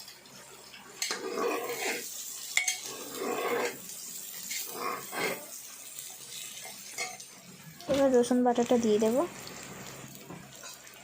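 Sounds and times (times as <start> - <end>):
onions sizzling in oil: 0.0 - 11.0
spoon scraping pot: 1.0 - 3.8, 4.5 - 5.5.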